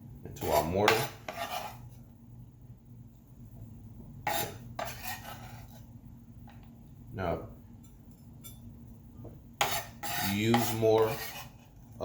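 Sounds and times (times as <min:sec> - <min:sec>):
utensil scraping cutting board: 0:00.4 - 0:01.9, 0:04.2 - 0:05.8, 0:09.6 - 0:11.8.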